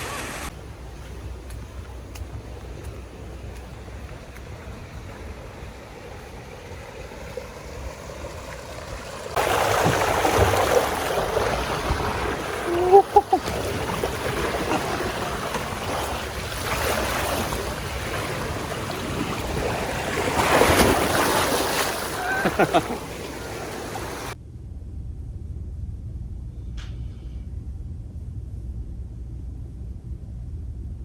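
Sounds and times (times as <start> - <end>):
sea water splashing: 0.0 - 24.4.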